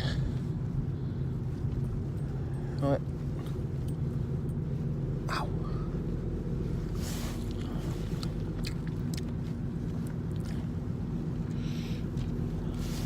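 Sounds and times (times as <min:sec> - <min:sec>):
low hum inside a car: 0:00.0 - 0:13.0
crisp crunches and wet smacks: 0:07.1 - 0:10.8
person chewing a sandwich: 0:07.2 - 0:13.0.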